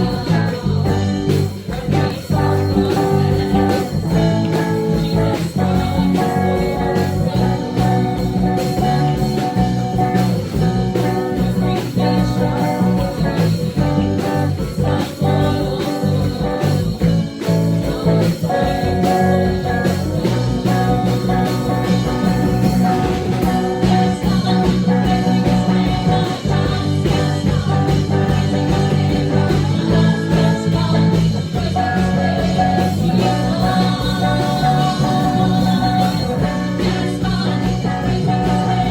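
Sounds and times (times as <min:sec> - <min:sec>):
band playing worship song: 0:00.0 - 0:38.9
person singing: 0:00.0 - 0:38.9.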